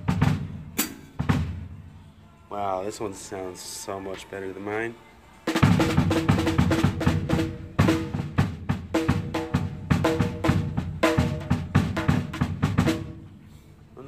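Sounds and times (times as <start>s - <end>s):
drum kit played fast: 0.0s - 1.8s, 5.5s - 13.4s.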